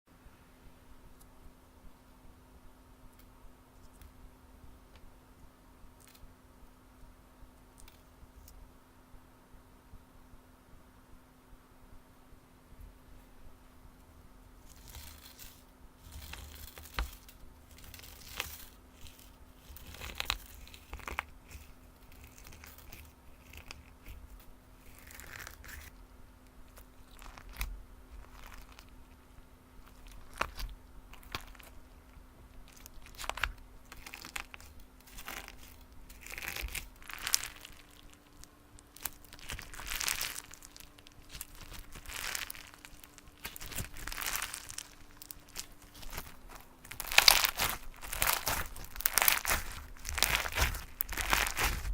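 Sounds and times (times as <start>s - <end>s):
slime crackling and popping: 14.6s - 25.9s, 26.7s - 29.0s, 29.8s - 31.9s, 32.5s - 51.9s.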